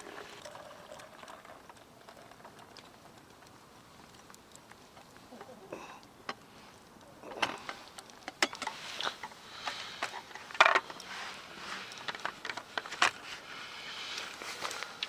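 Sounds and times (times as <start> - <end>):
clicks and knocks of handling: 6.0 - 11.2.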